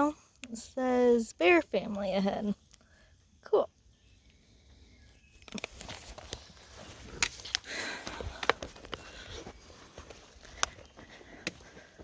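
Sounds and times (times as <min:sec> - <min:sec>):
soft rustle: 0:04.2 - 0:12.0
footsteps on rocky trail: 0:05.1 - 0:12.0.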